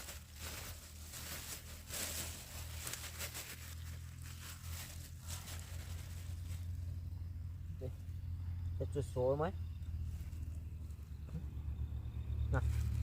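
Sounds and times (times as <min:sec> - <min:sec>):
rustling and crinkling handling: 0:00.0 - 0:07.0
steady low hum: 0:00.0 - 0:13.0.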